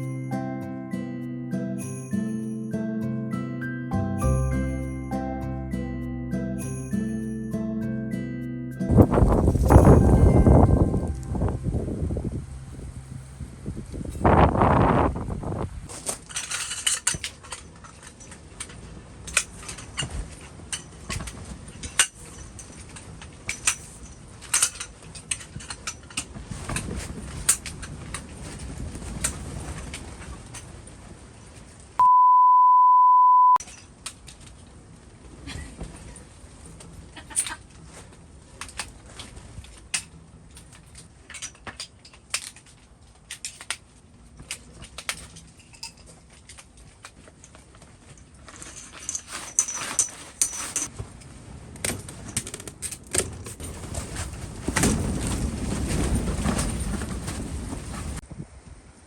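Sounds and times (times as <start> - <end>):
wind on microphone: 8.9 - 15.9
high electronic beep: 32.0 - 33.6.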